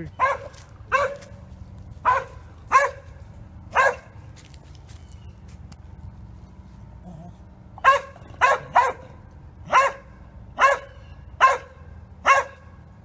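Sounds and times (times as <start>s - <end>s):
dog barking: 0.2s - 1.4s, 2.0s - 3.1s, 3.7s - 4.2s, 7.8s - 12.7s.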